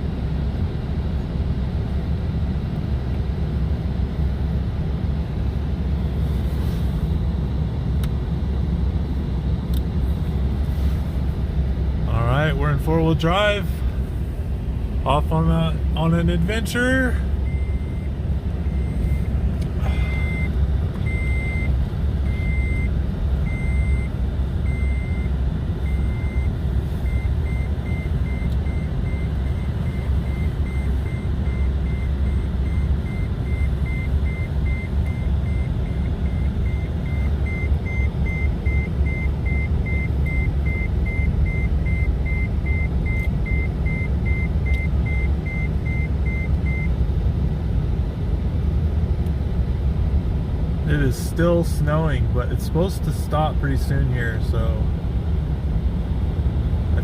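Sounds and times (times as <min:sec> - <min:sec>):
engine and tyres rumbling: 0:00.0 - 0:57.0
dashboard warning chime beeping: 0:12.3 - 0:13.8, 0:15.1 - 0:47.0.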